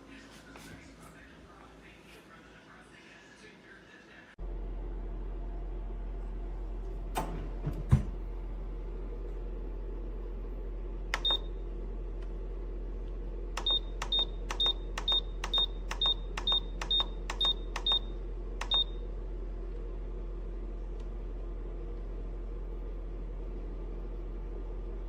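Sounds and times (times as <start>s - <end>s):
steady low hum: 0.0s - 25.0s.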